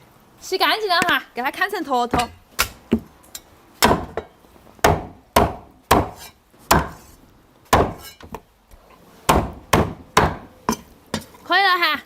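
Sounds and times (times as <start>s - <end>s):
cleaver chopping chicken on board: 4.9s - 7.0s, 7.8s - 8.1s, 9.3s - 10.4s.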